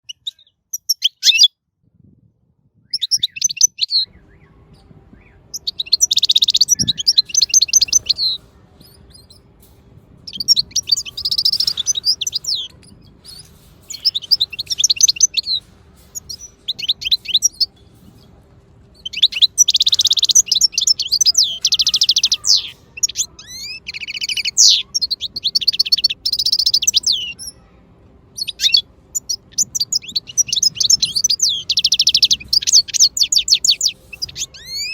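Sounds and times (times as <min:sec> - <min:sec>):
parrots chattering chirps: 0:00.2 - 0:01.5, 0:05.5 - 0:09.4, 0:10.3 - 0:17.7, 0:19.0 - 0:27.7, 0:28.4 - 0:34.9.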